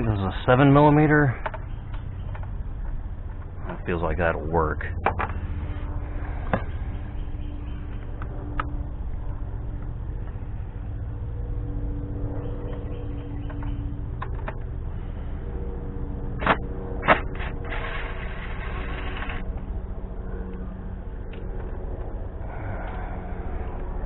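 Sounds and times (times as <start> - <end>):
steady low rumble: 0.0 - 24.0
rasping scrape: 17.2 - 19.4.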